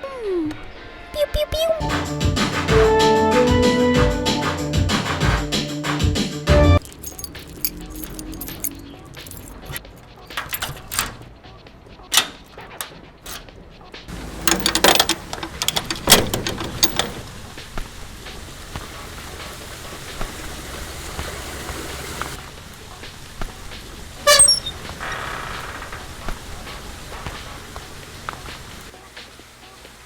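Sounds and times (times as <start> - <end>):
sharp clicks and knocks: 6.8 - 11.3, 14.3 - 17.2
busy clatter: 6.8 - 17.6
steady hiss: 15.2 - 30.0.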